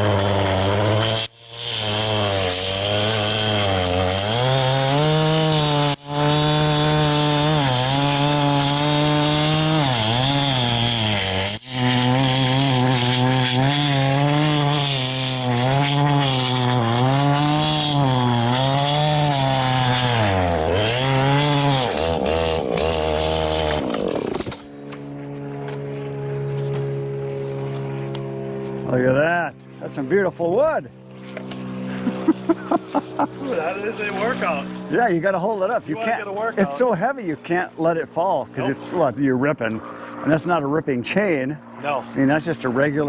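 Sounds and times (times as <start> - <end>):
chainsaw idling: 0.0 - 25.2
chainsaw cutting log: 0.0 - 29.2, 31.3 - 37.6.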